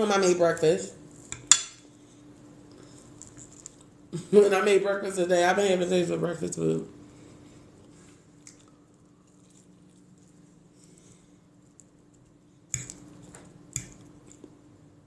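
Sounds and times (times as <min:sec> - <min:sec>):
faint low hum: 0:00.0 - 0:15.0
quiet chewing: 0:02.0 - 0:04.0, 0:07.2 - 0:14.6.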